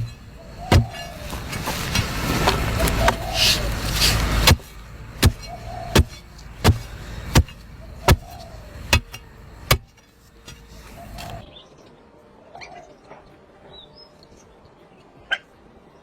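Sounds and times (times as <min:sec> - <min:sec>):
sharp knocks: 0:04.4 - 0:09.9.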